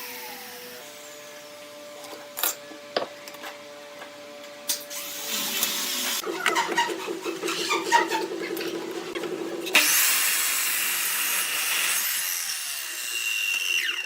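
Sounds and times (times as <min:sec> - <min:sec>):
turning tool chatter and clicks: 0:04.7 - 0:10.0
wood lathe motor hum: 0:05.2 - 0:14.0.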